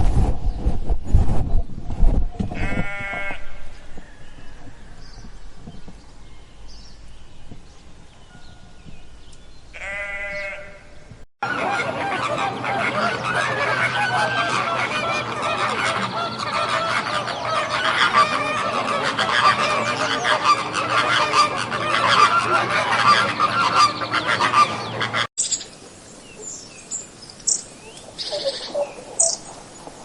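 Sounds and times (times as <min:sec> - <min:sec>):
bird calls: 0:02.2 - 0:30.0
farm animal bleating: 0:02.6 - 0:03.6, 0:09.7 - 0:10.9.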